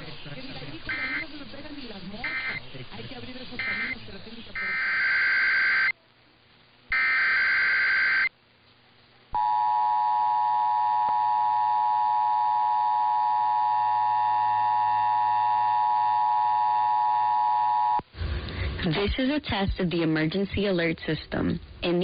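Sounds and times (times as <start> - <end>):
digital data burst: 0.9 - 1.3.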